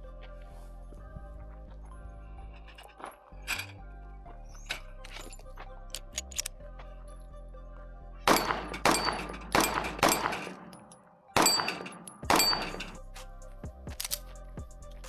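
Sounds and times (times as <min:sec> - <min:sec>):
faint background music: 0:00.0 - 0:15.0
pistol shots with ringing tail: 0:08.3 - 0:13.0.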